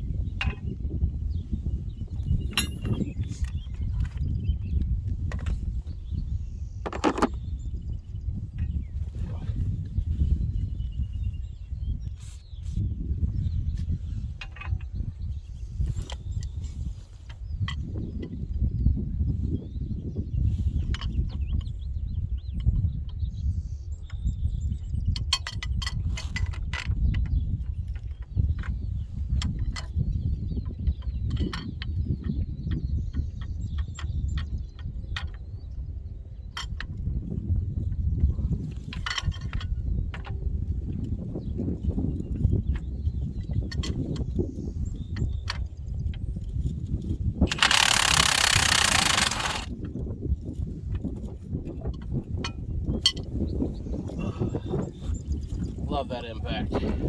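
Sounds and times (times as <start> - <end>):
small birds chirping: 0.0 - 25.1
wind on microphone: 0.0 - 57.0
impact wrench running: 47.5 - 49.7
metallic clicks and knocks: 47.5 - 49.7.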